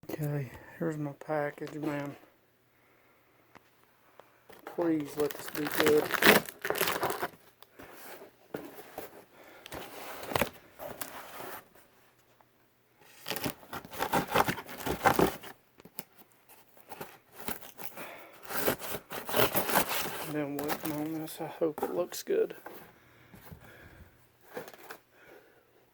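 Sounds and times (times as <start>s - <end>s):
wrapping crinkling: 4.6s - 7.6s, 13.1s - 15.6s, 16.8s - 21.4s
package being torn open: 5.0s - 7.3s.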